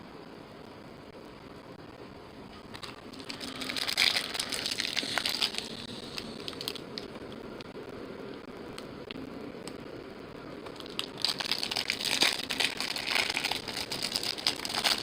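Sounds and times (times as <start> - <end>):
foil wrapper crinkling: 2.7 - 7.1, 10.7 - 15.0.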